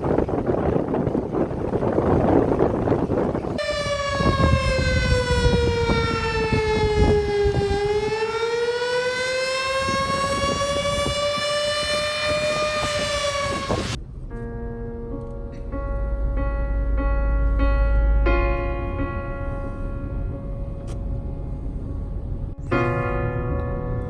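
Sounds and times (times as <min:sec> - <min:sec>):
wind noise: 0:00.0 - 0:24.0
warning siren wailing: 0:03.6 - 0:14.0.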